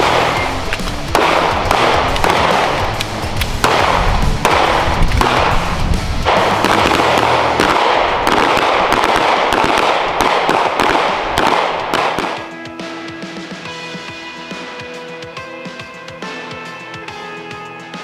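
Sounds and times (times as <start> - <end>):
rapid handgun fire: 0.0 - 12.6.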